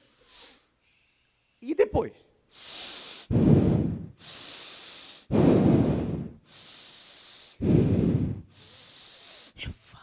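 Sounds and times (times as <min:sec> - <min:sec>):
woman breathing heavily with growl: 0:03.2 - 0:09.5.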